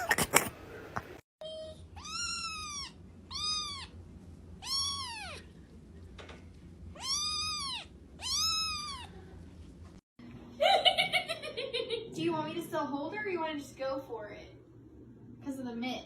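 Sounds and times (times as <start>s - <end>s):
cat meowing: 2.0s - 4.0s, 4.6s - 5.5s, 7.0s - 9.2s.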